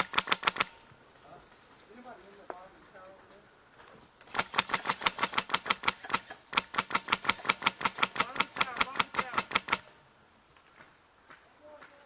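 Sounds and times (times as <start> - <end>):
airsoft rifle rapid fire: 0.0 - 0.8, 4.3 - 9.9.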